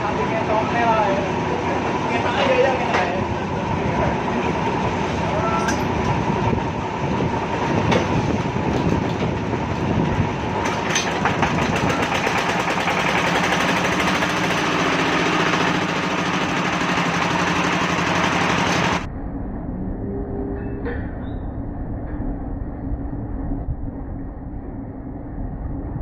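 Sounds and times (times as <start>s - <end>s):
diesel engine chugging: 0.0s - 19.1s.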